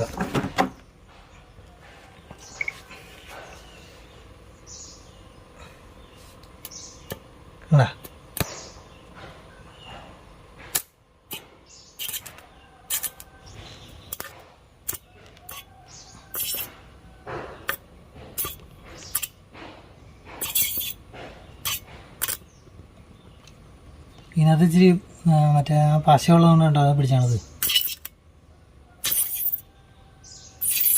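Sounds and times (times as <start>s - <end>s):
crackling welding arc bursts: 29.0s - 29.6s.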